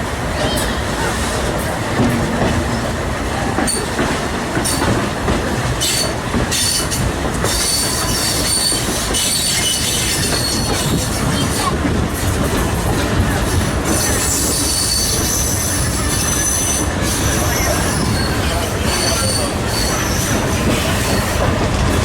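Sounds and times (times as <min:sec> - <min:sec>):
train car rumbling on rails: 0:00.0 - 0:22.0
track knocks: 0:01.5 - 0:15.3, 0:16.8 - 0:22.0
wheels squealing: 0:05.8 - 0:11.9, 0:13.4 - 0:22.0.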